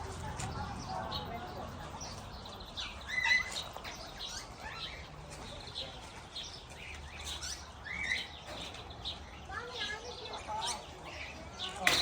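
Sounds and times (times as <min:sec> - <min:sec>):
birds chirping and whistling: 0:00.1 - 0:12.0.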